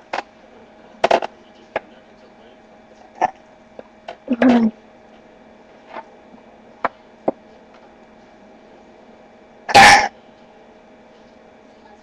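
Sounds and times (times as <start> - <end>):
loud burp: 9.7 - 10.1.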